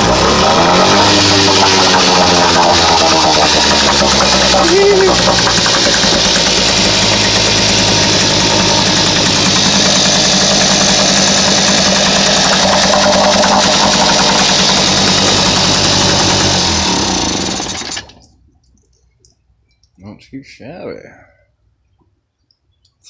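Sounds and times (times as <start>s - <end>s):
outboard motor idling: 0.0s - 18.4s.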